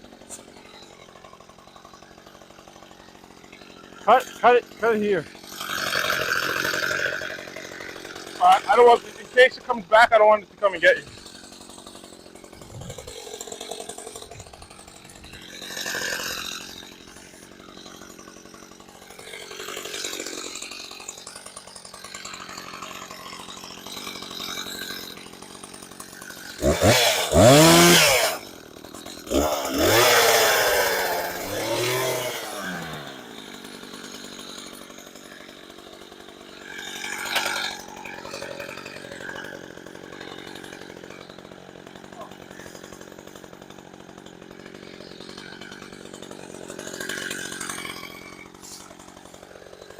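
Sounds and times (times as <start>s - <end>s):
chainsaw idling and revving: 0.0s - 49.9s.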